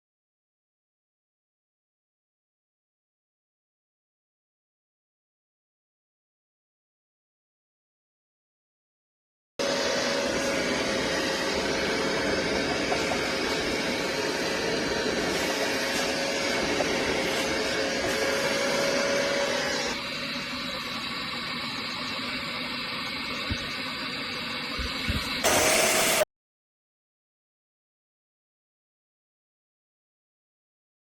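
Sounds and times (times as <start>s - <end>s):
spot cleaner suction motor whine: 9.6s - 26.2s.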